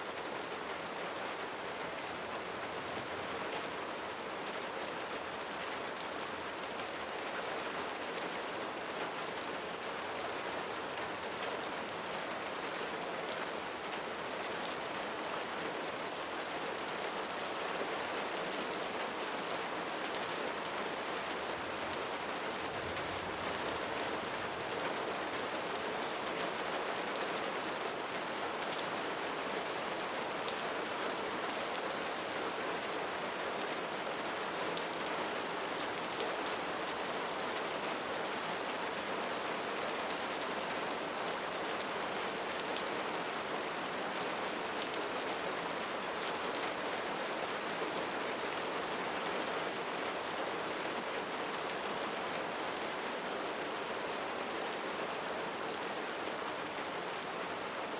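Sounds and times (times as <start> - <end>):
rain falling on leaves: 0.0 - 57.9.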